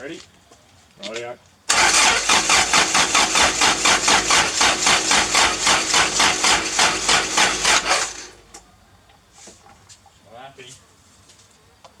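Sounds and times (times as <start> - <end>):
starter motor cranking engine: 1.7 - 8.7.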